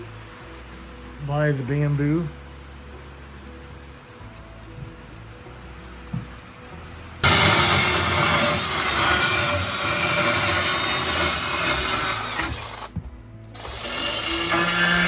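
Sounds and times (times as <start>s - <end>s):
power saw cutting wood: 7.2s - 13.0s, 13.6s - 15.0s.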